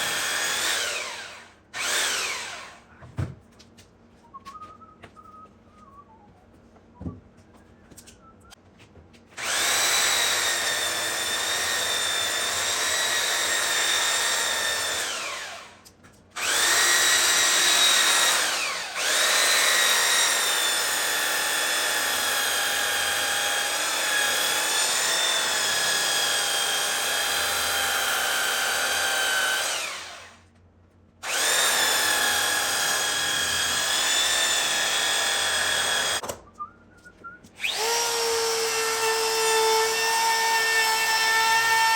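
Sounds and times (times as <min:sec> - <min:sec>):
electric sander whining on wood: 0:00.0 - 0:02.8, 0:09.4 - 0:15.7, 0:16.4 - 0:30.3, 0:31.2 - 0:36.2, 0:37.6 - 0:41.9
motor winding down: 0:00.0 - 0:02.8, 0:09.4 - 0:15.8, 0:16.4 - 0:30.4, 0:31.2 - 0:36.2, 0:37.6 - 0:41.9.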